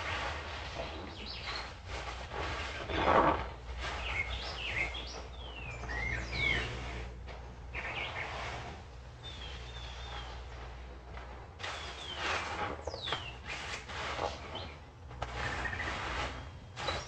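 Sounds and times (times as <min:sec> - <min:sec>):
low background hum: 0:00.0 - 0:17.0
birds chirping and singing: 0:00.8 - 0:01.8, 0:03.9 - 0:10.8, 0:11.6 - 0:17.0.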